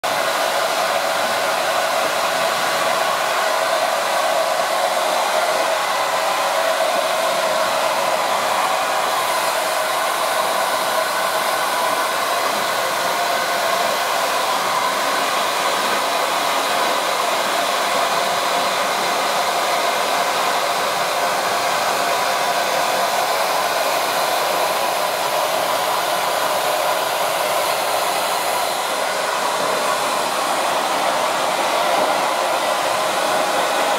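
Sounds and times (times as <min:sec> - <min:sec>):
hair dryer running: 0:00.0 - 0:33.9.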